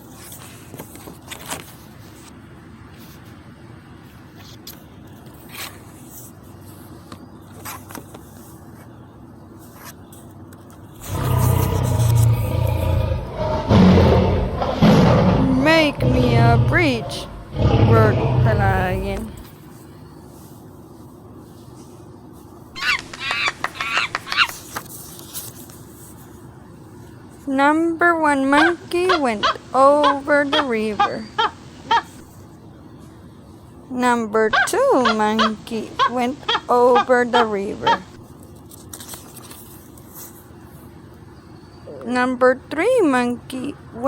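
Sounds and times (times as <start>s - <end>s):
low steady hum: 10.6s - 44.0s
loud deep steady tone: 11.0s - 19.4s
monkey chattering: 22.8s - 24.6s
faint clicks and rustles: 38.1s - 41.2s.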